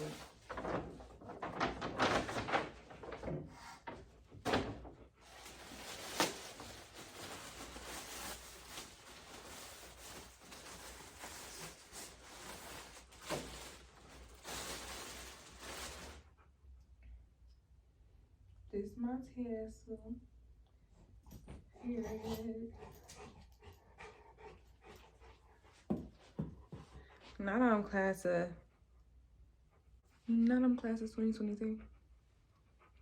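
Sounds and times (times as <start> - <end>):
packaging crinkling and rustling: 0.0 - 3.5, 4.5 - 16.2.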